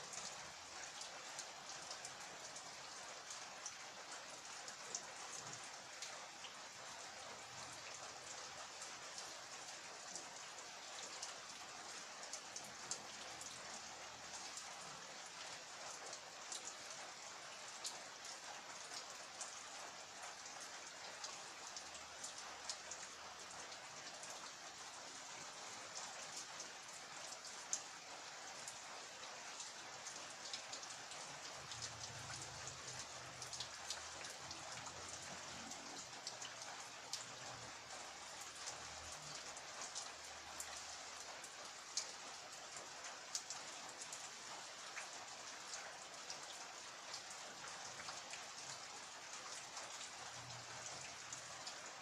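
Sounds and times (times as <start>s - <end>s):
raindrops ticking on a surface: 0.0s - 52.0s
steady rain hissing: 0.0s - 52.0s.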